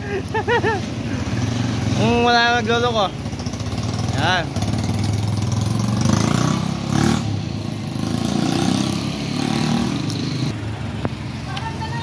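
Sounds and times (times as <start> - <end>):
motorcycle engine revving: 0.4 - 11.2.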